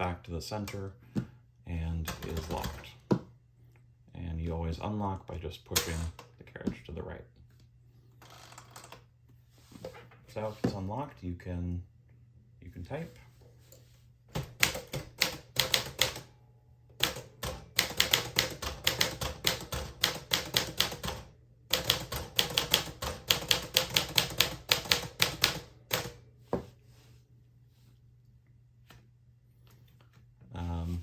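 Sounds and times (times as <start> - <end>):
manual typewriter typing: 2.0 - 2.9, 14.4 - 16.3, 17.0 - 26.2.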